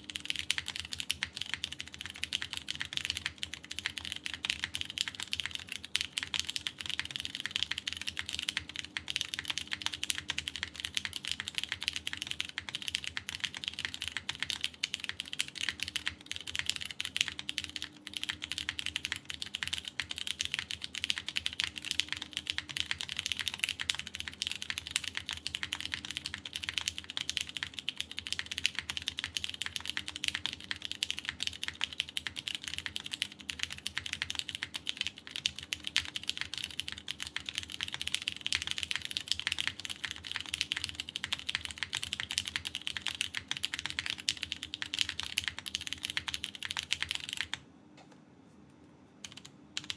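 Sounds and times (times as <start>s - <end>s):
fast mechanical keyboard typing: 0.0s - 47.6s, 49.2s - 49.9s.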